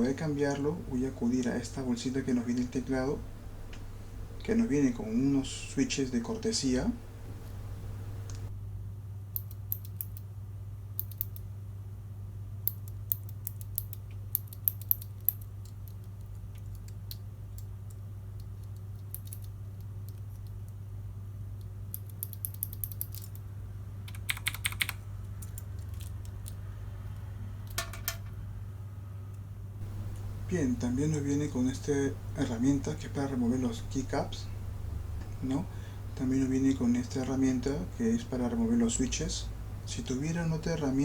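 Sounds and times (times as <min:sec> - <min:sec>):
steady low hum: 0:00.0 - 0:41.0
mechanical keyboard clicks: 0:24.1 - 0:25.0.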